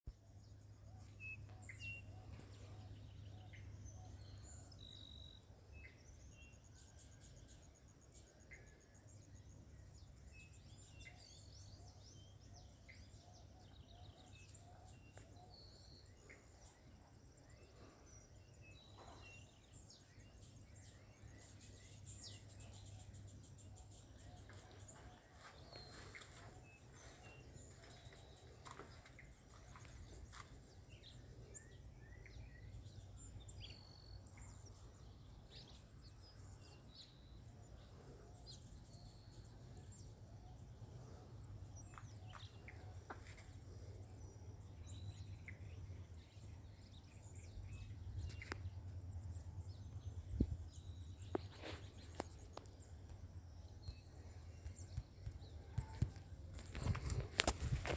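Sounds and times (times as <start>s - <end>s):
faint birds chirping: 0.1s - 57.9s.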